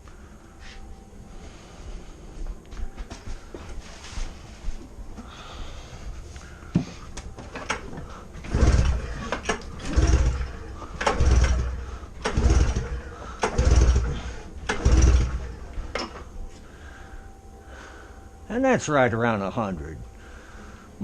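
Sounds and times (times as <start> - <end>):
engine cranked with pull-starter: 7.4 - 16.2.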